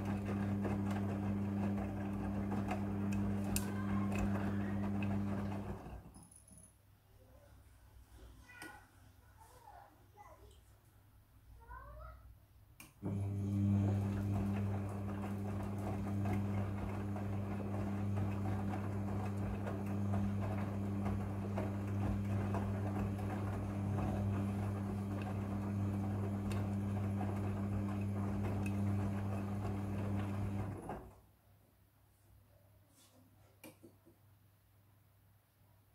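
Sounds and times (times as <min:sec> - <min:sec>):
washing machine churning: 0:00.0 - 0:06.1, 0:13.0 - 0:31.1
washing machine motor hum: 0:00.0 - 0:06.2, 0:13.0 - 0:31.2.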